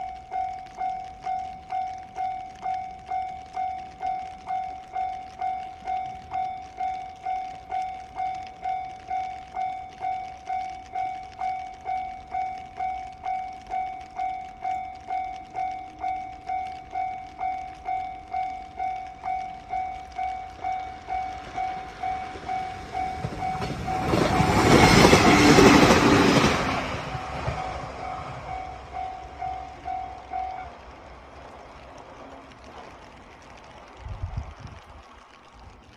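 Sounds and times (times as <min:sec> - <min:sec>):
train rushing past: 0:21.0 - 0:32.9.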